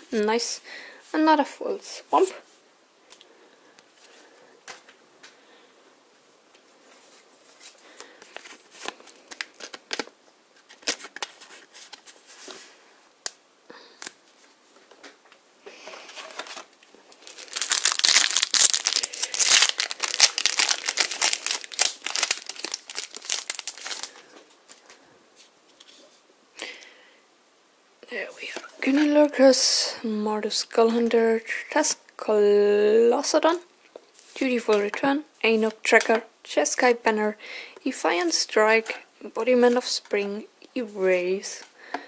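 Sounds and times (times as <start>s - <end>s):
foil wrapper tearing and crinkling: 8.4s - 11.5s, 16.2s - 24.8s.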